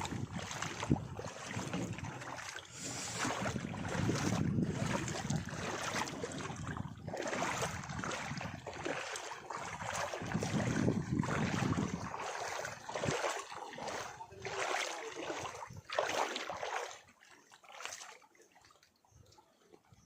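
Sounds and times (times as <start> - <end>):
wind rumbling on microphone: 0.0 - 14.6, 15.3 - 16.2
water washing and splashing: 0.0 - 18.2.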